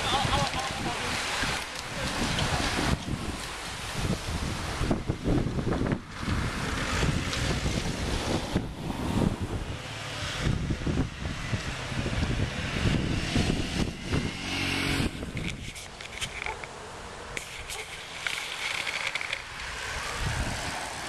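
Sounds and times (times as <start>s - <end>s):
wind buffeting microphone: 0.0s - 16.5s, 18.9s - 21.0s.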